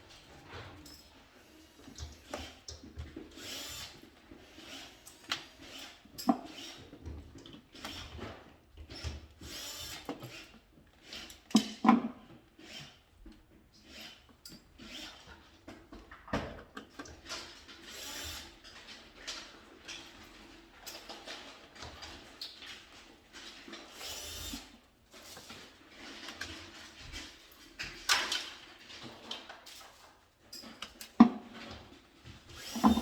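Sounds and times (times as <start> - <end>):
tool handling clicks and scrapes: 16.8 - 33.0.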